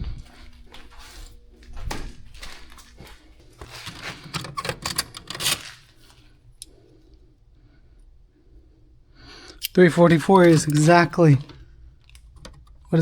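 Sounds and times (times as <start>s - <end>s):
metal tools clinking: 3.6s - 5.8s, 9.6s - 11.6s.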